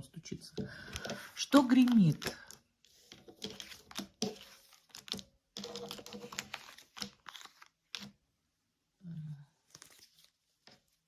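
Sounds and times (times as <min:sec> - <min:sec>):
cards clicking and rustling: 0:00.9 - 0:08.2.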